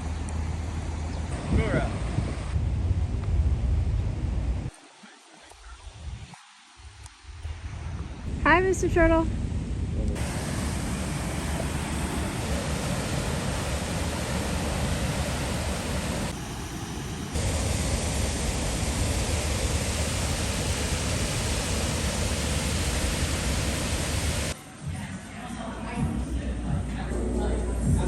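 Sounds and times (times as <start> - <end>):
waterfall rushing: 10.2 - 24.6.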